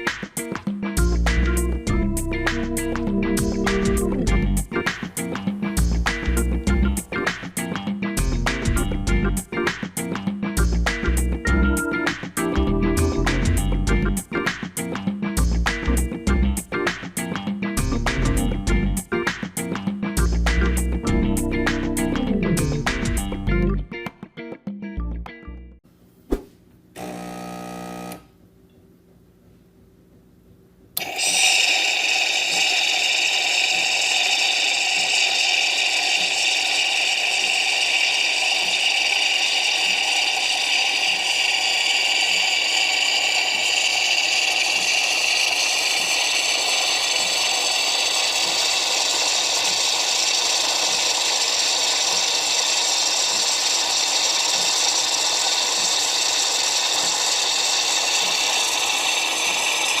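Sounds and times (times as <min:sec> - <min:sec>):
espresso machine running: 0:02.5 - 0:05.0, 0:21.7 - 0:23.3, 0:27.0 - 0:28.3, 0:31.0 - 1:00.0.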